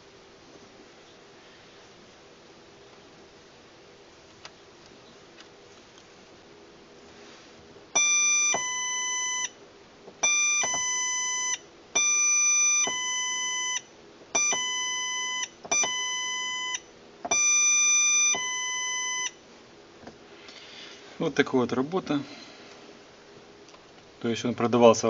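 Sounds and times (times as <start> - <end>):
electronic two-tone doorbell: 8.0 - 9.6, 10.2 - 19.4.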